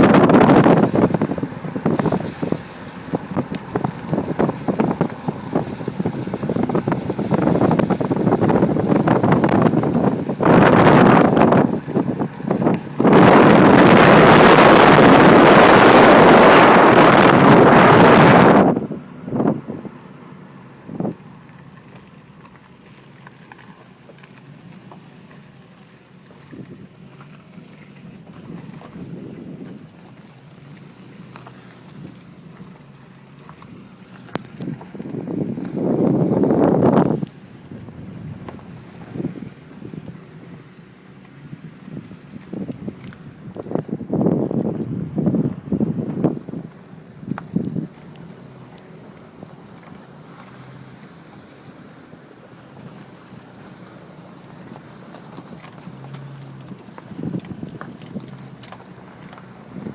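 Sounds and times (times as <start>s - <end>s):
wind buffeting microphone: 0.0s - 21.9s, 28.1s - 31.2s, 31.8s - 59.9s
small crackles and knocks: 29.6s - 35.7s, 54.5s - 59.6s.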